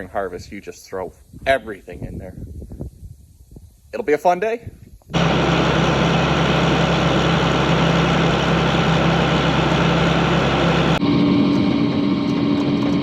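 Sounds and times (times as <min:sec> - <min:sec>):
combine harvester engine running: 0:05.1 - 0:13.0
engine humming: 0:05.1 - 0:13.0.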